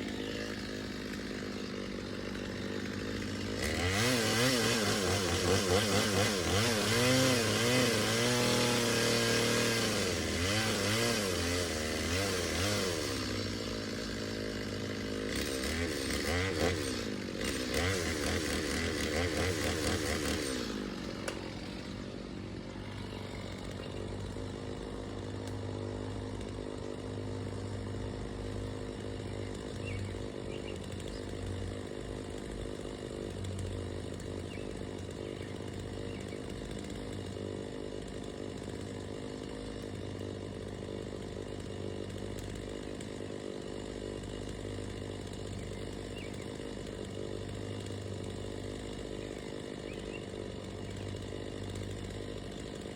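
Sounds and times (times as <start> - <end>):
chainsaw running: 0.0 - 52.9.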